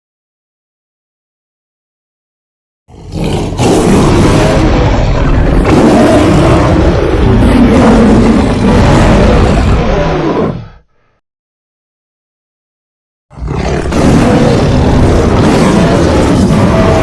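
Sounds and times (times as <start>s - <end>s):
rough creature roar-growl: 2.9s - 11.1s, 13.3s - 17.0s.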